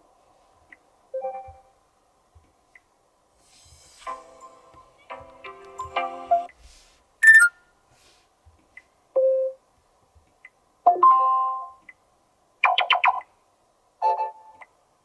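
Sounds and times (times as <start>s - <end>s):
phone notification chimes and beeps: 7.2s - 7.6s.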